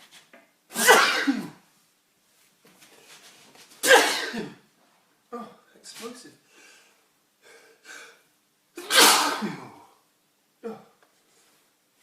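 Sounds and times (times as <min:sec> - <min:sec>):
man sneezing: 0:00.7 - 0:01.6, 0:03.8 - 0:04.6, 0:08.8 - 0:10.0.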